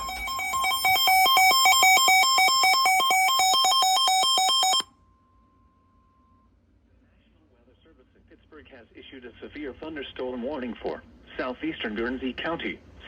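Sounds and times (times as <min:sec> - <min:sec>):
two-tone warbling alarm: 0:00.0 - 0:04.9
faint steady tone: 0:00.0 - 0:07.3.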